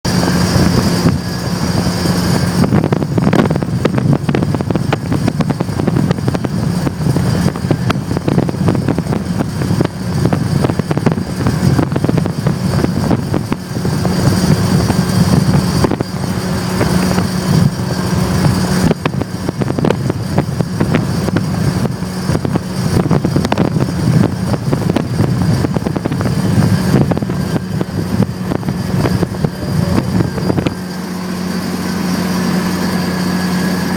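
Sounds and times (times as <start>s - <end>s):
car engine humming: 0.0s - 33.9s.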